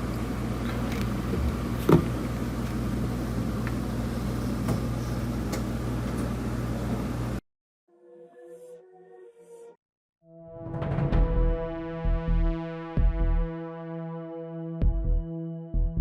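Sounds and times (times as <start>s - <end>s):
low mechanical hum: 0.0s - 7.4s.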